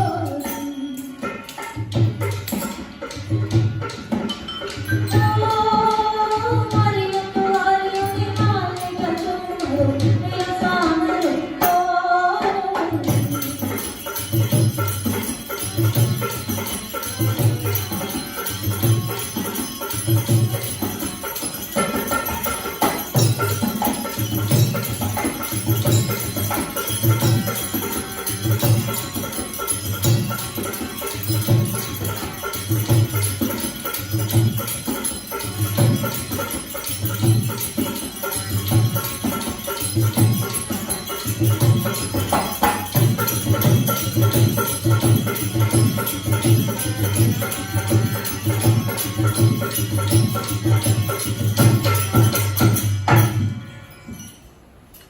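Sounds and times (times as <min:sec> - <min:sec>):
person singing: 0:00.0 - 0:01.3
jingling bells: 0:00.0 - 0:10.8, 0:13.1 - 0:55.0
steady drum beat: 0:13.0 - 0:53.2.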